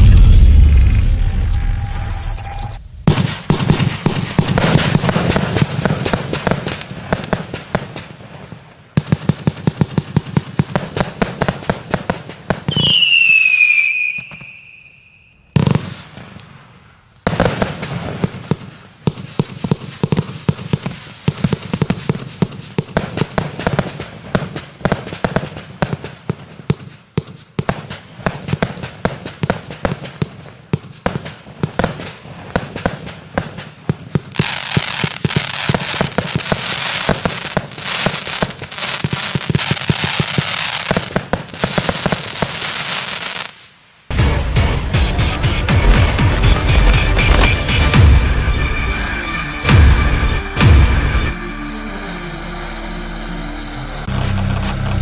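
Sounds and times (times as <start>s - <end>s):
falling firework whistle: 0.0s - 4.6s, 12.7s - 16.0s, 45.0s - 55.0s
fireworks launch shots: 0.0s - 53.2s
fireworks crackling bursts: 0.0s - 55.0s.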